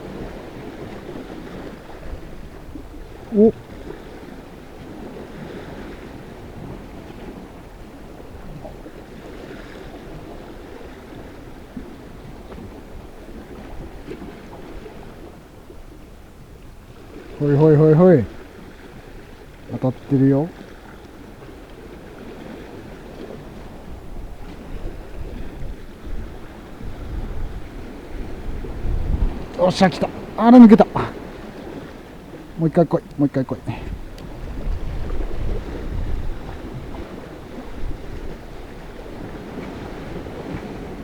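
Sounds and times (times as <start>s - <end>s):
sea waves washing: 0.0s - 41.0s
wind blowing on microphone: 23.1s - 41.0s.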